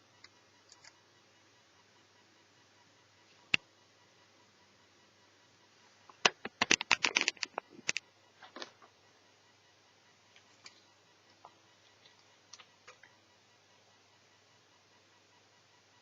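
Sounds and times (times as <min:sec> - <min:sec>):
small parts clicking and rattling: 0:06.2 - 0:08.0.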